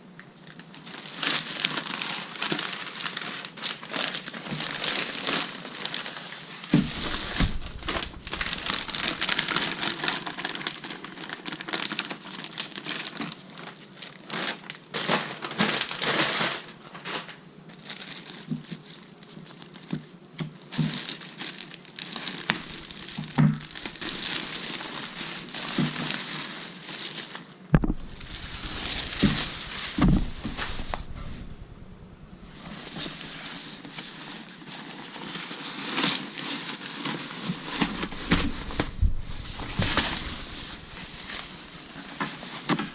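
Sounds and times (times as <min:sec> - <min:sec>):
packaging crinkling and rustling: 0:00.4 - 0:42.9
knocks: 0:27.8 - 0:32.4.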